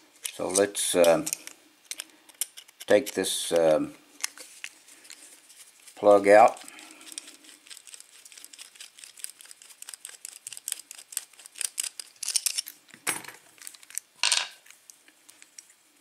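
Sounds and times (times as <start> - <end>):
padlock clicking and rattling: 1.1 - 3.0, 10.0 - 12.7.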